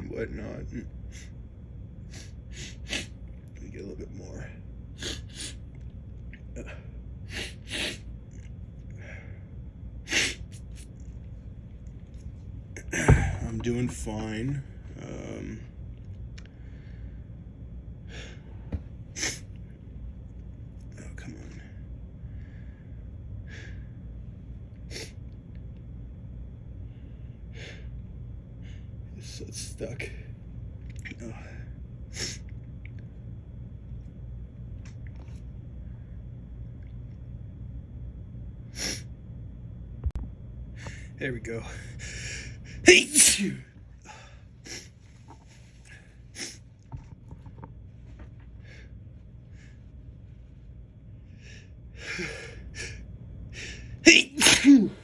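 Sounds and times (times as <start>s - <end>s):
man sniffing: 2.1s - 3.1s, 6.6s - 8.0s.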